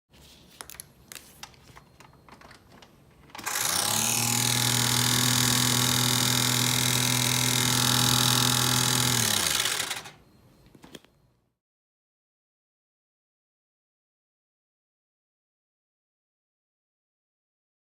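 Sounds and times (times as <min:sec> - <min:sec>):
heater blower fan running: 0:03.4 - 0:10.2.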